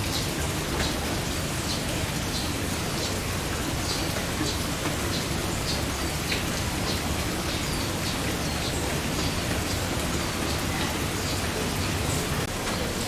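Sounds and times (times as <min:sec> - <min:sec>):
heavy rain falling: 0:00.0 - 0:13.0.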